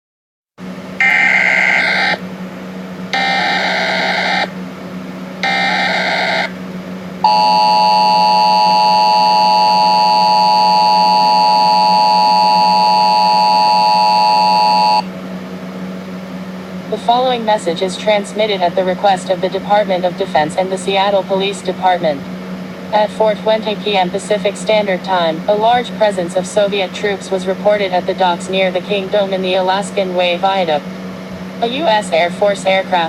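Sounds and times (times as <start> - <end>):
low hum: 0.8 - 15.7
two-tone attention signal: 1.0 - 2.2, 3.2 - 4.5, 5.4 - 6.5, 7.2 - 15.1
warbling data tones: 1.0 - 2.2, 3.2 - 4.6, 5.4 - 6.6, 7.3 - 15.1.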